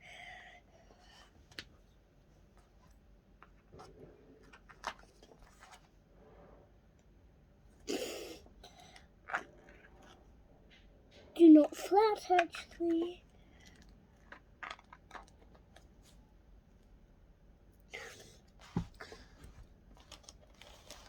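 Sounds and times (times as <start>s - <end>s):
crackle: 20.0s - 21.0s.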